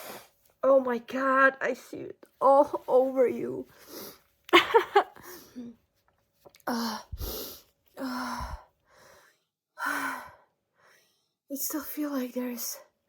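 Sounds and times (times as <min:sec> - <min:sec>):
breathy gasps and sighs: 0:06.6 - 0:11.4.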